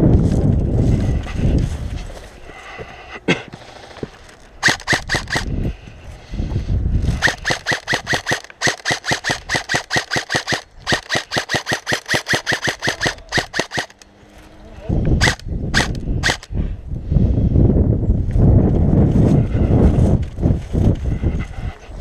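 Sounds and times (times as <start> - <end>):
low handling or wind rumble: 0.0 - 3.0, 4.0 - 22.0
airsoft gun rapid firing: 4.6 - 5.5, 7.1 - 14.0, 15.2 - 16.5.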